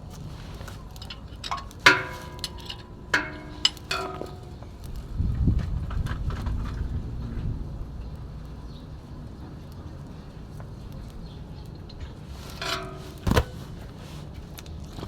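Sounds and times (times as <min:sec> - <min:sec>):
metal tools clinking: 0:00.3 - 0:04.9, 0:12.4 - 0:13.8
sharp metal strikes: 0:01.6 - 0:04.8.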